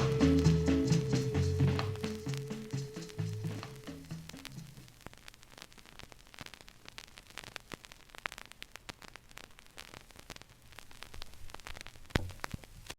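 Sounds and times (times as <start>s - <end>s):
low hum: 0.0s - 4.8s
vinyl crackles and pops: 0.0s - 12.9s
vinyl record hiss: 0.0s - 12.9s.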